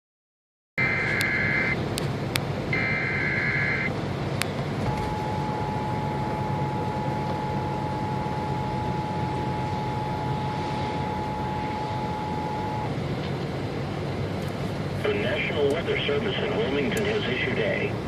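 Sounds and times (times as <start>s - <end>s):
radio static with crackle: 0.8s - 1.8s, 2.8s - 3.9s, 15.0s - 18.0s
steady attention tone: 0.8s - 1.8s, 2.7s - 4.0s, 4.8s - 13.0s.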